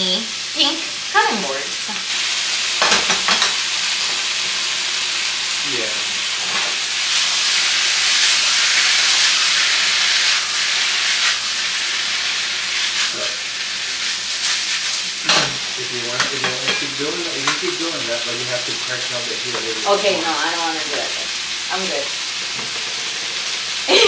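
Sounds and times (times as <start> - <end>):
stir fry sizzling in pan: 0.0 - 24.0
utensil clicking on pan: 16.2 - 17.7.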